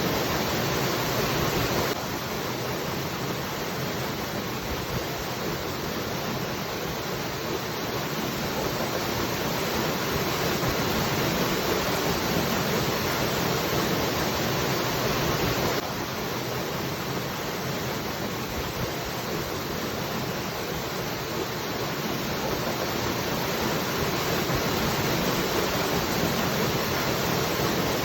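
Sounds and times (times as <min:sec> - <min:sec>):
waterfall rushing: 0:00.0 - 0:28.0.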